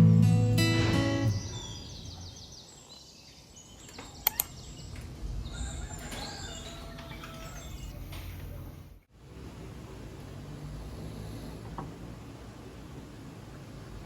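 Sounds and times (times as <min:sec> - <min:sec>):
sharp clicks: 0:04.0 - 0:05.1.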